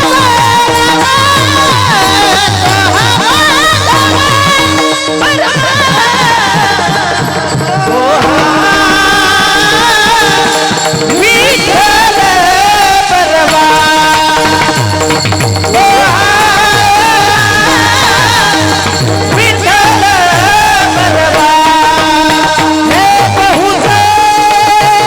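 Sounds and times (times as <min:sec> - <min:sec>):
devotional singing: 0:00.0 - 0:25.0
low drumbeats: 0:00.0 - 0:25.0
steady held drone: 0:13.7 - 0:24.0.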